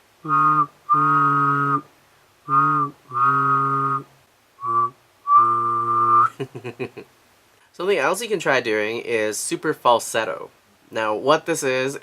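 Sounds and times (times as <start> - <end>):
man humming and whistling: 0.2 - 1.9, 2.5 - 6.5.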